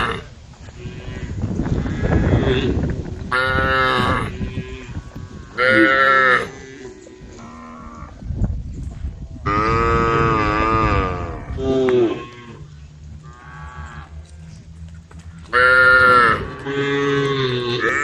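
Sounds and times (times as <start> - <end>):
cattle mooing: 0.0 - 8.2, 9.4 - 18.0
low rumble: 6.5 - 18.0.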